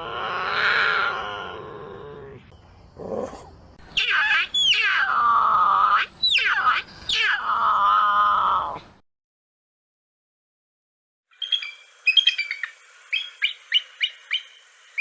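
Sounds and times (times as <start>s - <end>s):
cougar screeching calls: 3.9s - 8.8s.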